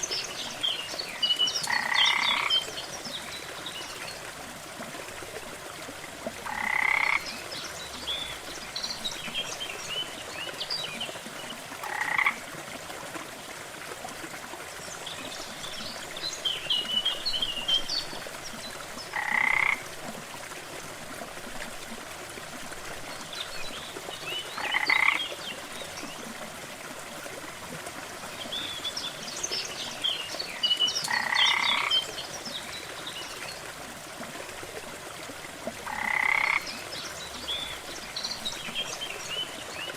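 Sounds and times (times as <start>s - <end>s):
small waterfall rushing: 0.0s - 39.9s
frogs croaking: 1.6s - 2.6s, 6.4s - 7.5s, 11.8s - 12.5s, 19.0s - 19.9s, 24.6s - 25.3s, 31.0s - 32.1s, 35.8s - 36.9s.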